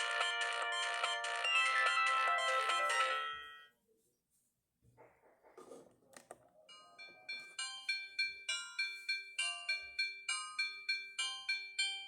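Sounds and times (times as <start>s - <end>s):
phone ringtone chiming melody: 0.0s - 3.7s, 6.7s - 12.0s.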